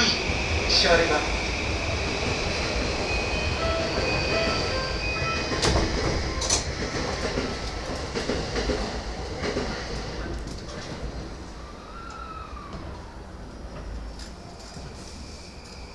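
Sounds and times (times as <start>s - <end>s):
train running rumble: 0.0s - 11.7s
wheels clacking over rail joints: 3.9s - 11.1s.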